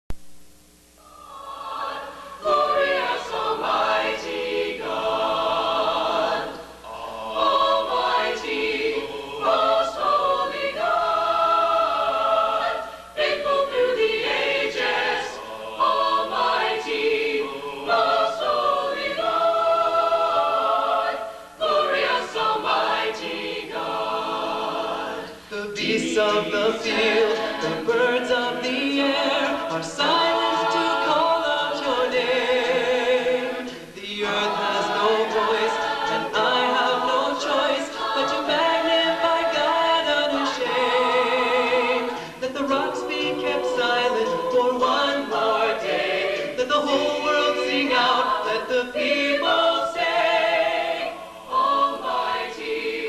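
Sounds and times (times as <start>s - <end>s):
choir singing unaccompanied: 1.0s - 53.0s
singers breathing: 25.2s - 25.6s, 42.1s - 42.4s.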